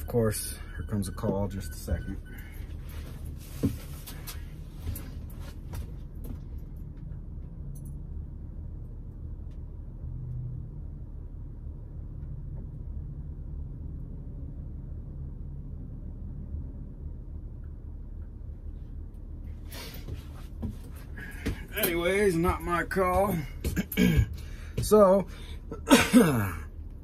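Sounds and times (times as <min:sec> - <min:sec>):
low rumble: 0:00.0 - 0:27.0.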